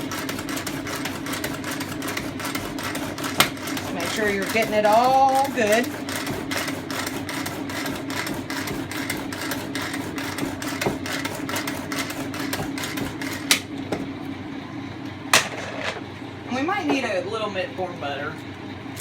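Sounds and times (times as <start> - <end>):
spoon scraping in plastic pot: 0.0 - 13.6.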